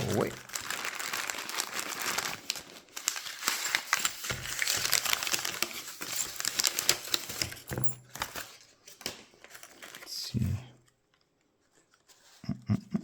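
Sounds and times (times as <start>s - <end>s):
packaging crinkling: 0.0s - 10.1s.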